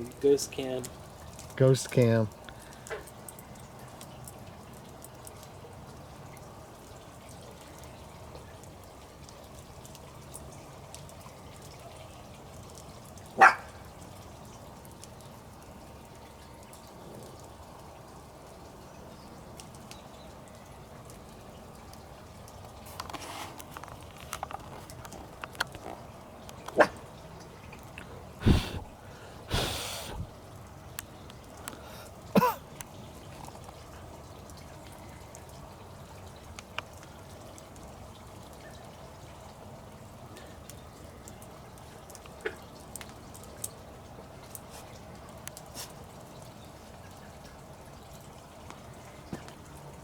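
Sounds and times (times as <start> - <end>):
wood pops and crackles: 22.9 - 26.8
campfire hissing: 28.4 - 30.5, 31.2 - 32.9.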